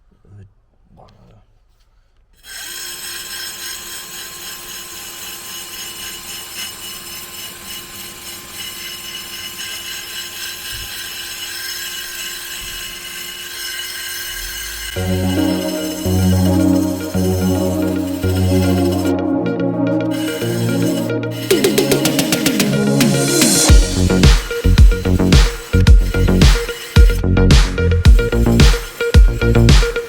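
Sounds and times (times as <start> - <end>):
wire wheel brushing rust: 2.4 - 19.2, 20.1 - 30.0
loud background music: 15.0 - 30.0.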